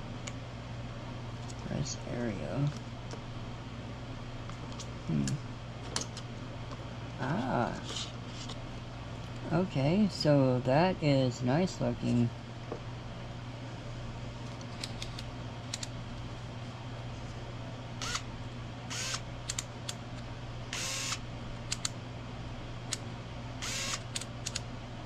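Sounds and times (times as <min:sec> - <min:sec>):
electric screwdriver motor whirring: 0:18.0 - 0:18.2, 0:18.9 - 0:19.2, 0:20.7 - 0:21.2, 0:23.6 - 0:24.2.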